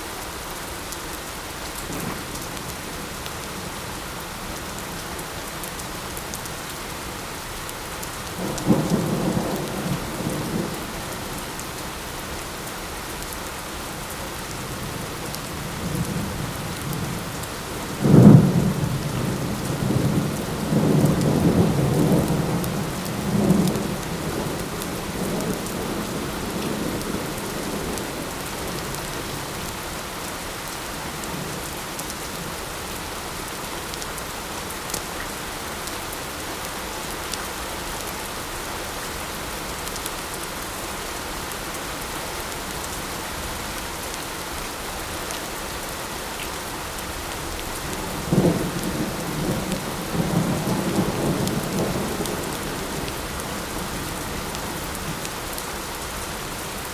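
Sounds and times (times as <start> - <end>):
steady light rain: 0.0 - 56.9
rolling thunder: 47.9 - 55.1.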